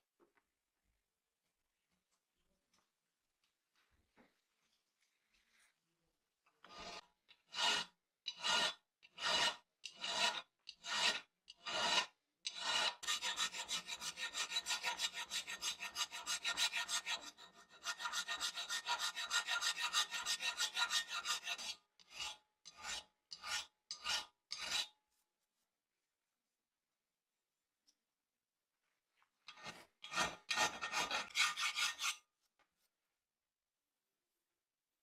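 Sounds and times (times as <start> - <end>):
rasping abrasive strokes: 6.7 - 24.9, 29.5 - 32.2.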